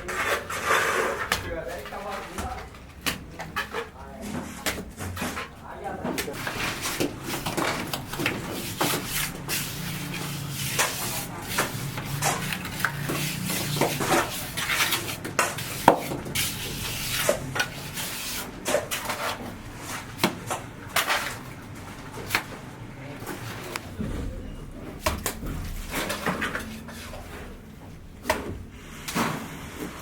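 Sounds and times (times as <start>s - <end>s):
tools knocking and scraping: 0.0s - 22.6s.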